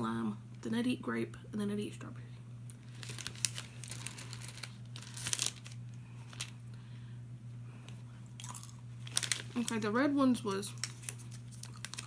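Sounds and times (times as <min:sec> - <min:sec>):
steady low hum: 0:00.0 - 0:12.0
plastic wrapper crinkling: 0:02.7 - 0:06.6, 0:08.4 - 0:12.0.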